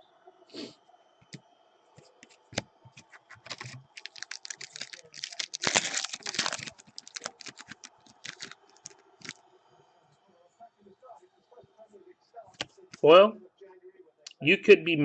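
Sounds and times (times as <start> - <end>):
trading cards flicked and rustling: 2.2 - 9.4.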